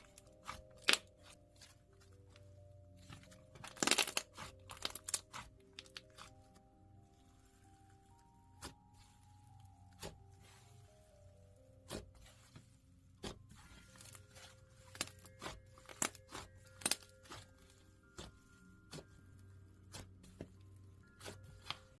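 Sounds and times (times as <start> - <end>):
soft background music: 0.0 - 22.0
slime clicking and popping: 3.6 - 6.3.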